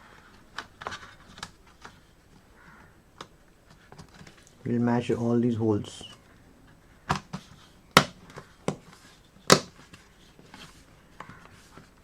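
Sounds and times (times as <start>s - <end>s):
sharp plastic clicks and knocks: 7.1s - 9.8s.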